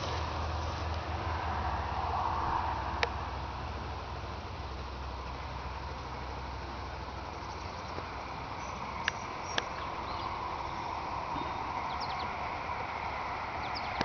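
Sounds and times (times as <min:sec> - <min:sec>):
steady outdoor hiss: 0:00.0 - 0:14.0
high bird chirps: 0:08.6 - 0:12.4.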